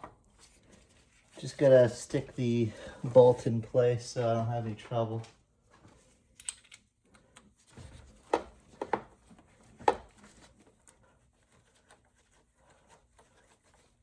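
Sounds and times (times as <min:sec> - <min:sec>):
faint handling noises: 0:00.0 - 0:14.0
clinks of metal parts: 0:06.4 - 0:07.5.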